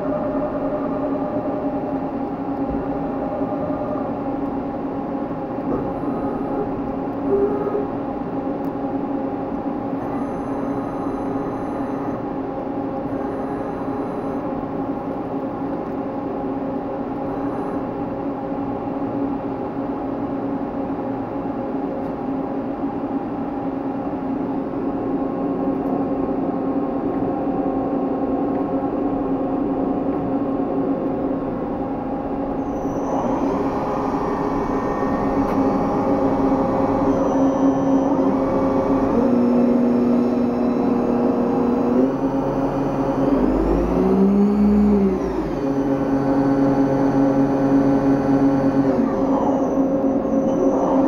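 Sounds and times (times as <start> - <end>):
lathe humming: 33.0 - 43.8.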